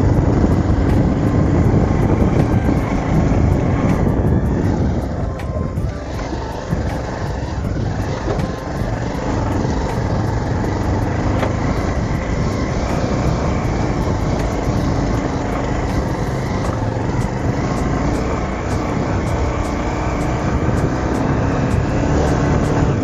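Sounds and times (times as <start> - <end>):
motorcycle engine running: 0.0 - 23.0
road and wind noise: 0.0 - 23.0.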